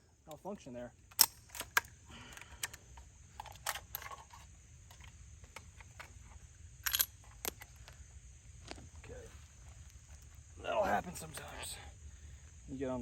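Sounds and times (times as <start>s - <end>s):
rifle action clicking and clacking: 1.1s - 2.8s, 3.4s - 6.1s, 6.8s - 7.7s.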